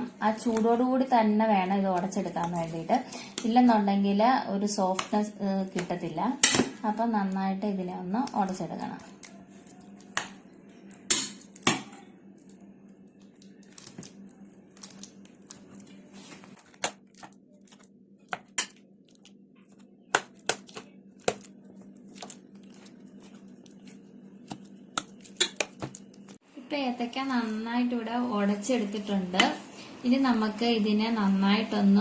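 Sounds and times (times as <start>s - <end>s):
soft squishing: 1.5s - 26.4s.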